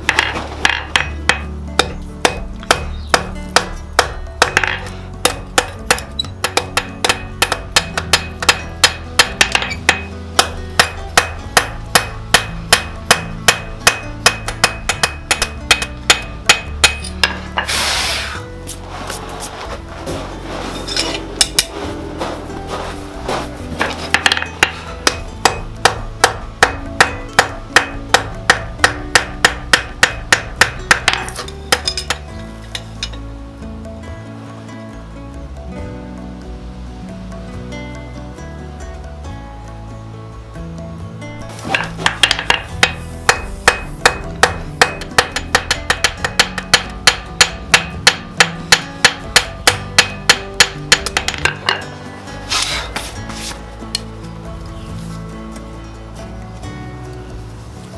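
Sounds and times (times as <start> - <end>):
hammer striking steel on anvil: 0.1 - 17.8, 20.9 - 22.0, 23.8 - 33.2, 41.5 - 54.1
hiss: 17.7 - 18.5.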